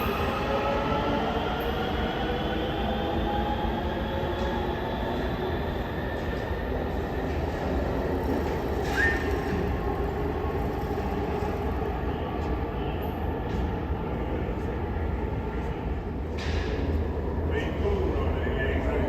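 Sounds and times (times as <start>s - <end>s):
subway train motors whining: 0.0s - 19.0s
train squeal: 8.4s - 10.1s.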